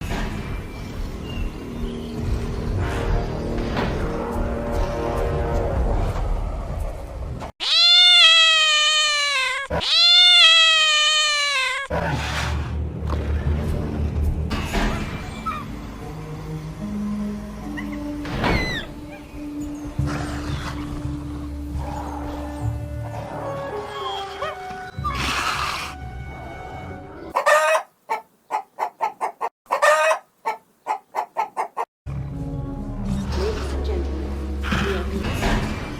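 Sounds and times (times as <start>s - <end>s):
chicken cackling: 7.6s - 11.9s, 27.2s - 31.9s
high-pitched meow-like cries: 7.6s - 11.9s.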